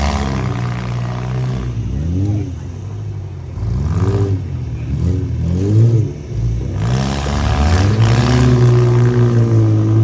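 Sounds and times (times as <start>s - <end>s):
van engines revving hard: 0.0s - 10.0s.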